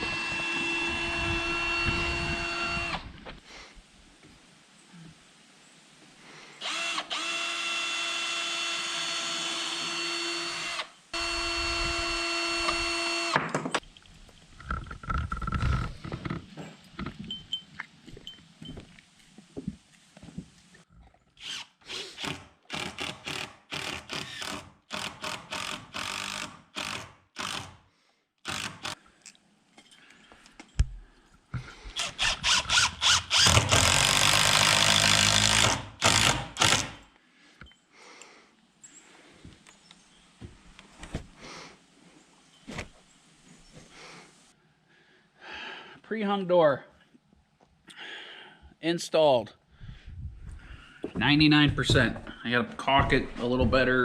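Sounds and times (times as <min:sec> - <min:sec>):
cordless drill running: 0:00.0 - 0:03.0, 0:06.6 - 0:13.4, 0:21.4 - 0:27.8, 0:28.4 - 0:29.0, 0:32.0 - 0:37.0.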